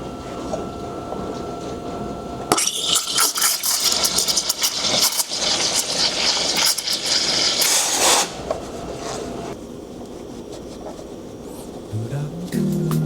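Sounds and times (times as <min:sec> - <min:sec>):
espresso machine hissing: 0:02.5 - 0:09.6.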